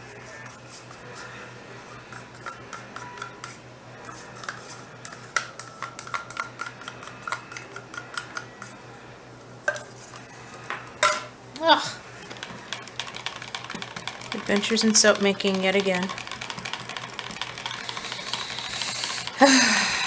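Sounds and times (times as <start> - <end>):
utensil scraping and clicking in cup: 2.1 - 8.7, 12.3 - 19.4.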